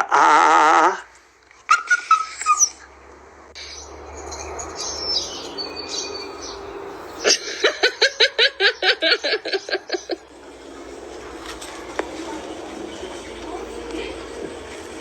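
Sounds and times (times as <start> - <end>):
bird calling sharp notes: 3.6 - 14.7.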